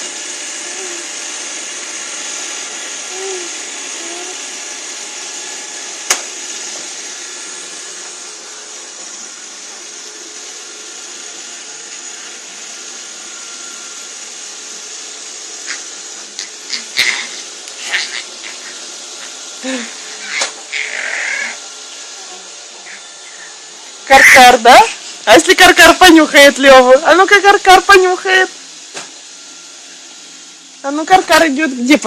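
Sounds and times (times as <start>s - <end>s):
robot vacuum cleaner whirring: 0.0s - 32.0s
sharp click: 6.1s - 6.3s.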